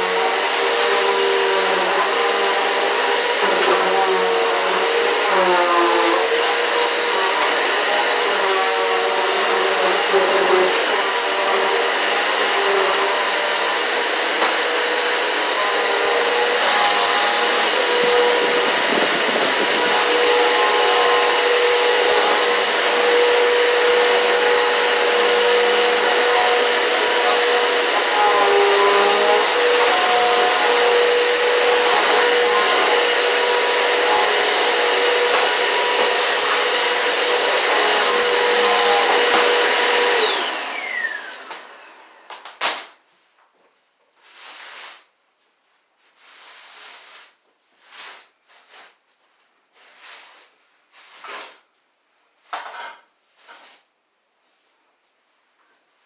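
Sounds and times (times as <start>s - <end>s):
vacuum cleaner running: 0.0s - 43.0s.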